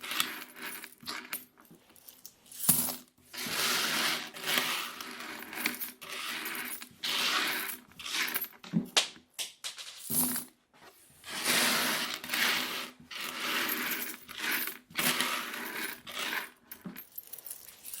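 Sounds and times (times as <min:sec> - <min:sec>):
coins jingling and clinking: 0:00.1 - 0:03.1, 0:04.4 - 0:08.6, 0:10.0 - 0:10.5, 0:12.0 - 0:18.0.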